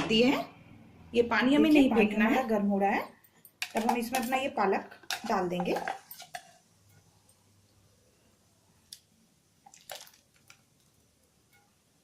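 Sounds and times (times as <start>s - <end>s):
faint utensil clicks and taps: 3.2s - 4.4s, 8.8s - 11.8s.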